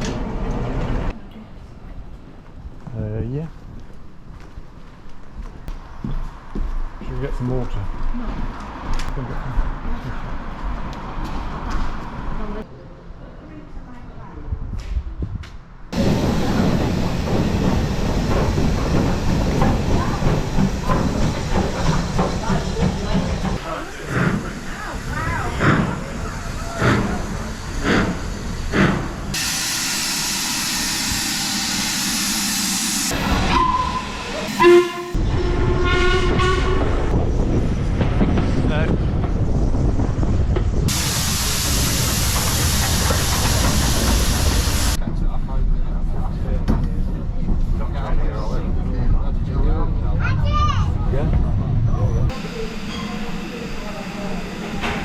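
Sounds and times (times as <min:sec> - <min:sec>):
train rumbling on track: 0:00.0 - 0:12.7, 0:14.0 - 0:55.0
wheels clattering over rails: 0:16.0 - 0:29.4
locomotive steam hissing: 0:16.0 - 0:35.2, 0:40.9 - 0:45.0, 0:52.3 - 0:55.0.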